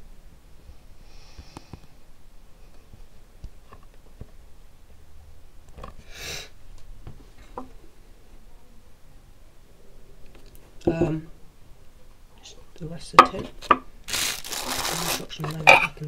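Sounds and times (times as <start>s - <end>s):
sniff: 1.0s - 1.9s, 6.0s - 6.6s
hands handling packaging: 14.0s - 15.9s.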